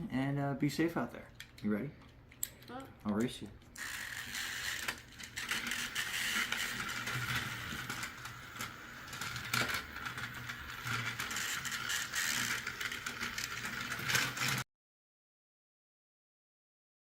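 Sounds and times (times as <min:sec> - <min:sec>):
toy motors and gears whirring: 0:02.4 - 0:14.6.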